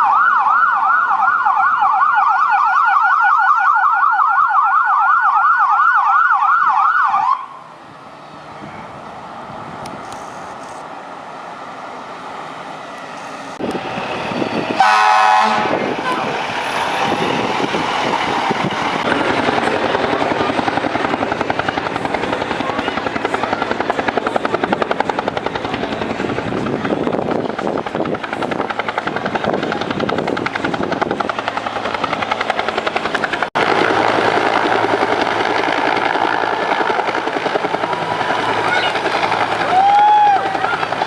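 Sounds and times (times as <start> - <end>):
helicopter rotor chopping: 13.0 - 41.0.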